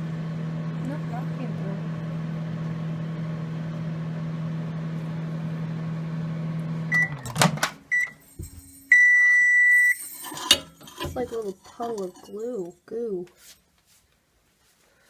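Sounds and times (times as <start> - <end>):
microwave oven humming: 0.0 - 10.1
microwave short beep: 6.9 - 10.1
microwave door opening clunk: 7.0 - 7.8.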